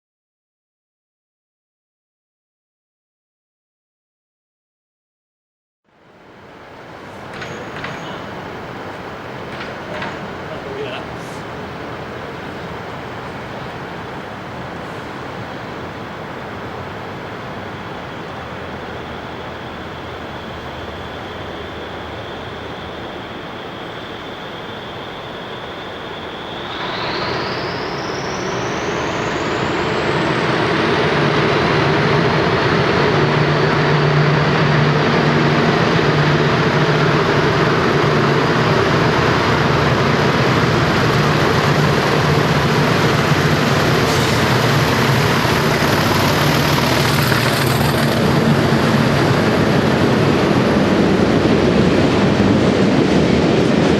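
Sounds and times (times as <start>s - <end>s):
diesel locomotive engine: 5.9s - 53.9s
turbocharger whistle: 18.9s - 36.6s.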